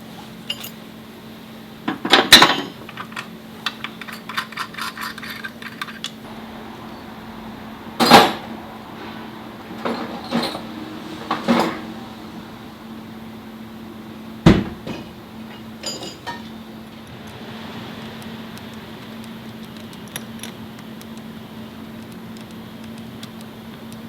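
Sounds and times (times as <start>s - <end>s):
steady low hum: 2.8s - 24.0s
hard objects knocking and clanking: 14.4s - 16.6s.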